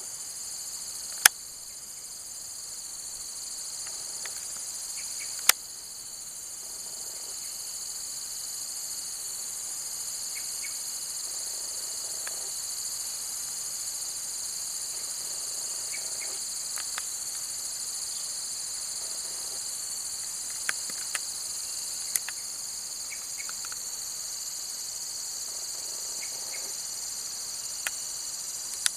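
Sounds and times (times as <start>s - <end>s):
high-pitched insect chorus: 0.0s - 28.9s
sharp clicks: 5.4s - 5.6s, 20.5s - 21.3s, 22.1s - 22.4s, 23.4s - 23.8s.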